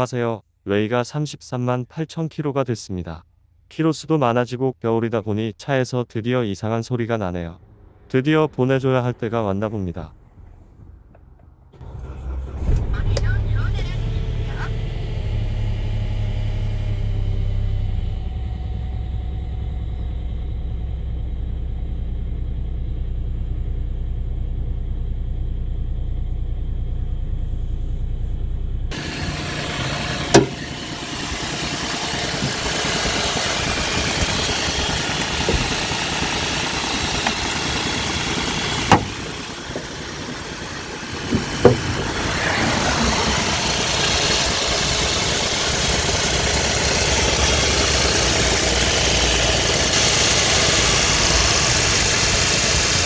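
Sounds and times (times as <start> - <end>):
car engine running: 9.4 - 53.0
sharp engine clicks: 28.9 - 53.0.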